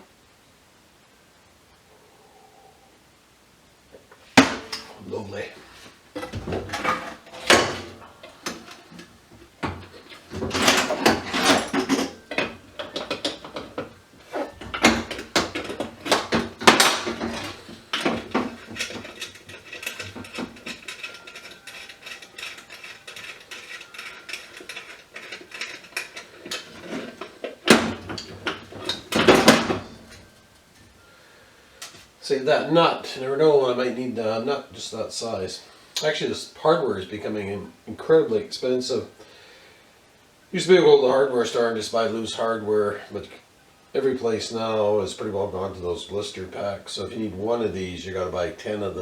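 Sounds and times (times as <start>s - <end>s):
small metal parts clinking: 10.0s - 30.4s.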